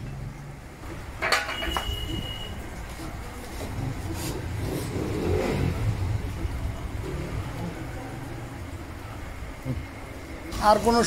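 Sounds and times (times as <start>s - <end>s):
motorcycle engine revving: 3.8s - 8.6s.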